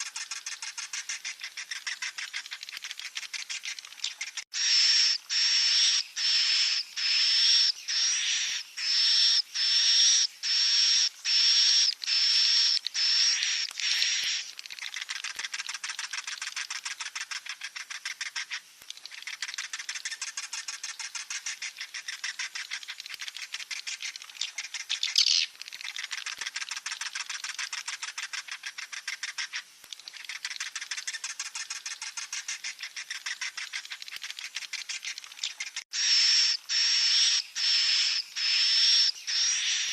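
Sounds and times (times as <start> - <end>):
chicks buzzing chatter: 0.0 - 15.8, 35.5 - 39.9
chicks high-pitched calls: 3.5 - 14.5, 35.9 - 39.9.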